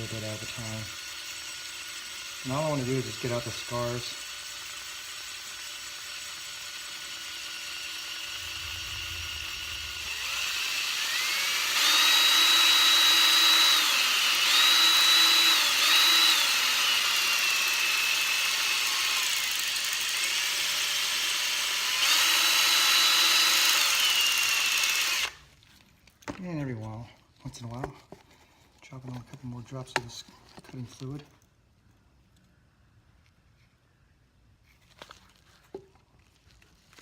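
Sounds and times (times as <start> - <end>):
power drill motor whine: 0.0 - 25.4.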